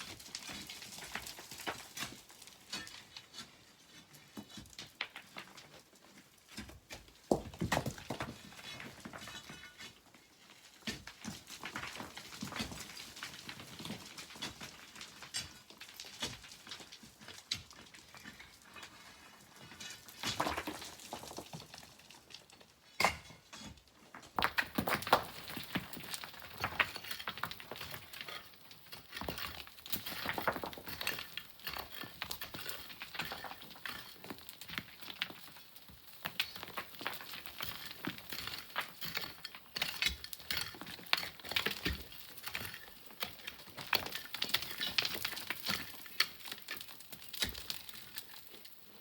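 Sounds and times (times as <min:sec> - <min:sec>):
pebbles clattering and trickling: 0:20.0 - 0:22.5, 0:24.4 - 0:49.0.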